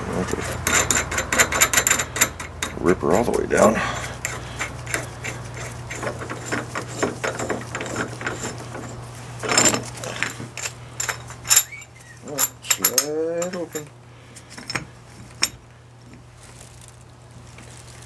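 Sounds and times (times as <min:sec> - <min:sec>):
metal bearing puller clicking: 0:00.3 - 0:03.4, 0:04.1 - 0:13.9.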